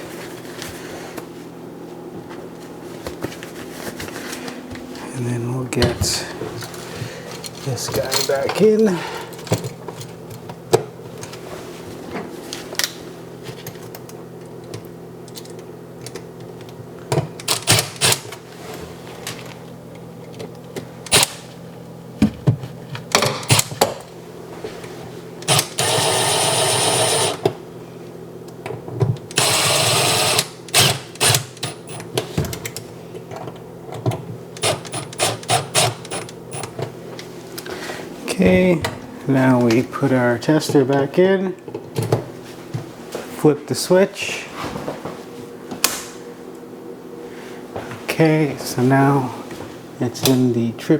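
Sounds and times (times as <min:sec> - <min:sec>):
clicks and knocks of tools: 0:12.5 - 0:18.4
cordless screwdriver running: 0:25.5 - 0:27.4, 0:29.3 - 0:32.0, 0:34.6 - 0:36.7.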